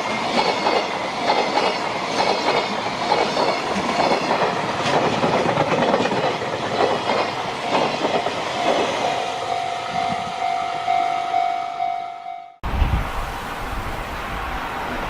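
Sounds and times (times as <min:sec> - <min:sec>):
train wheels clickety-clack: 0:00.0 - 0:09.0.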